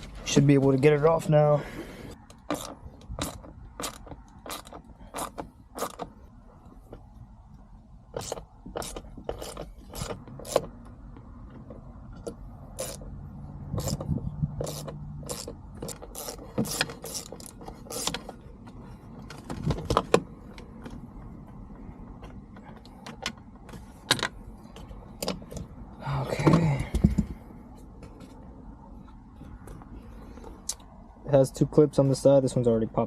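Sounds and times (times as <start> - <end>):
hand tools clicking and knocking: 2.2 - 6.2, 8.1 - 13.1, 13.8 - 21.0.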